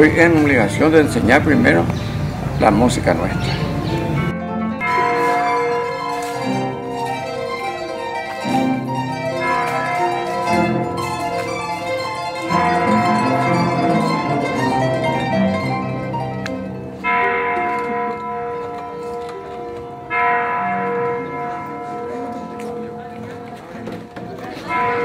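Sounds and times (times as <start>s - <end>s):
harp plucked melody: 3.2s - 19.4s.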